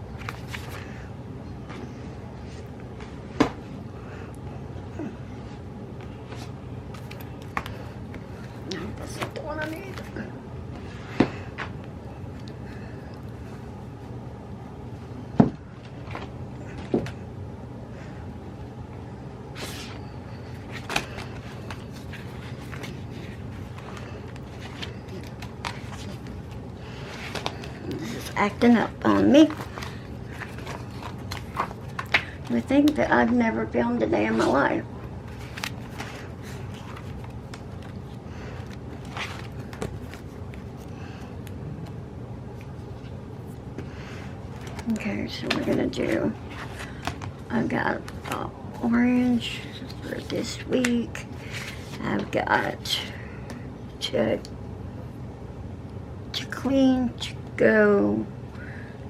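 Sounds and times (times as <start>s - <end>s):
steady low hum: 0.0s - 59.0s
paper rustling: 6.1s - 10.2s, 19.6s - 32.6s, 35.2s - 42.0s, 44.5s - 47.4s.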